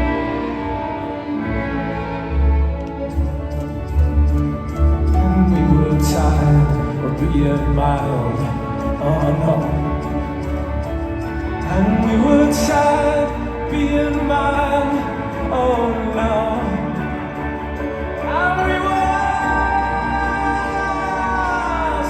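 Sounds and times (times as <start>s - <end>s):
orchestra and band playing: 0.0s - 22.0s.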